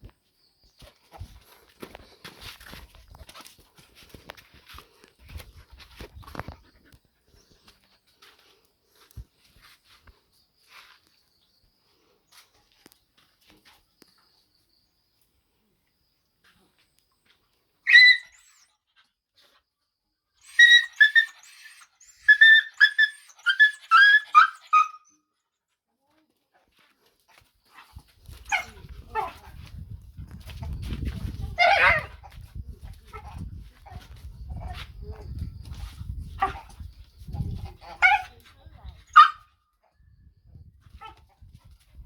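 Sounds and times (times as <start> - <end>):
puppy yelping: 17.9 - 18.6, 20.4 - 25.1, 31.6 - 32.1, 39.1 - 39.4.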